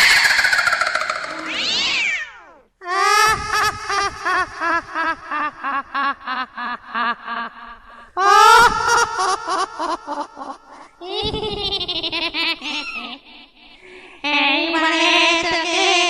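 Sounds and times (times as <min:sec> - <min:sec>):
high-pitched cackling laugh: 0:00.0 - 0:02.0, 0:02.9 - 0:13.3.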